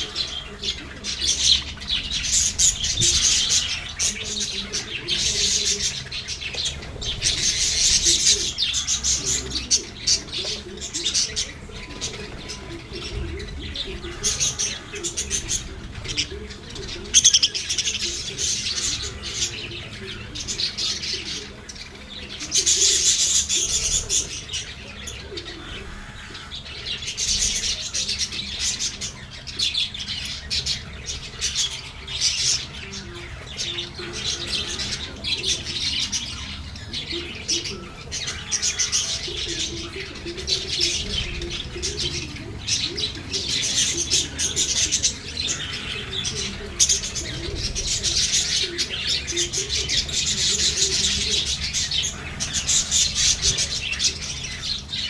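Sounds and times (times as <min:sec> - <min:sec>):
lovebirds chirping: 0:00.0 - 0:55.0.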